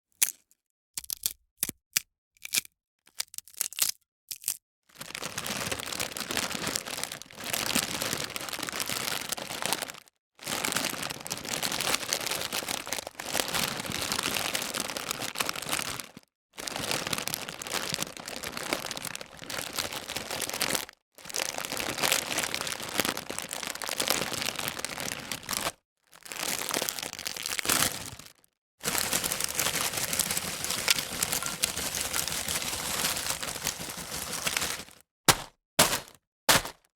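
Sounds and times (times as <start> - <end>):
chip bag crinkling: 5.0 - 15.7, 21.4 - 36.9.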